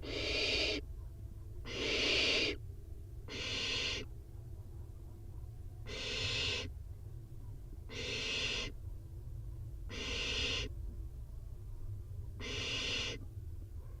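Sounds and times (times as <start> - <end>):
owl nestlings hissing: 0.0 - 0.8, 1.6 - 2.6, 3.3 - 4.1, 5.9 - 6.7, 7.9 - 8.7, 9.9 - 10.7, 12.4 - 13.2
steady low hum: 0.0 - 14.0.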